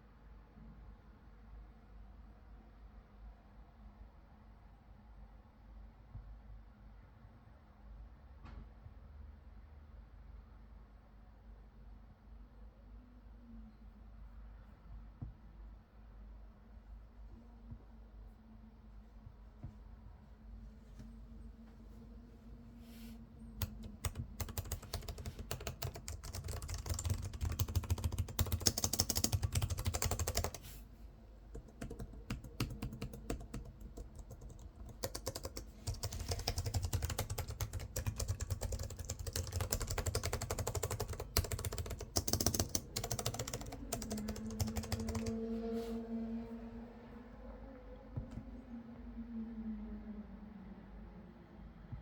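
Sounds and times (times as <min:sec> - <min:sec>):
fast typing on mechanical keyboard: 0:23.6 - 0:30.6, 0:31.6 - 0:45.4.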